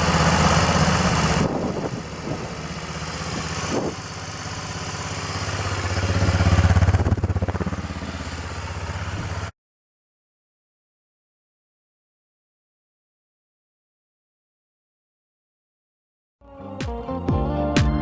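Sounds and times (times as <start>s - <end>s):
motorcycle engine revving and idling: 0.0s - 9.5s.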